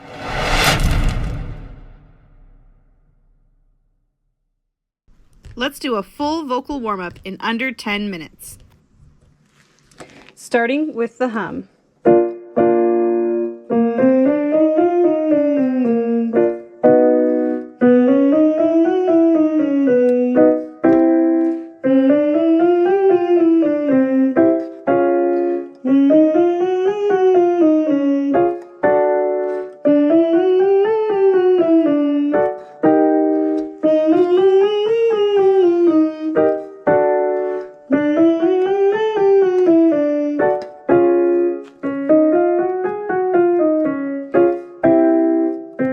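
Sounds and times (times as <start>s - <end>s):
person humming sliding up and down: 37.9s - 40.6s.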